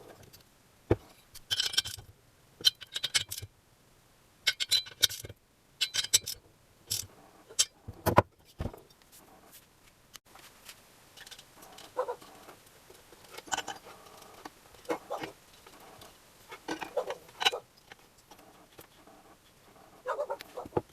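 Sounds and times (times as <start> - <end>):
metal parts and tools clinking: 1.1 - 3.5, 4.4 - 9.0, 11.2 - 19.2.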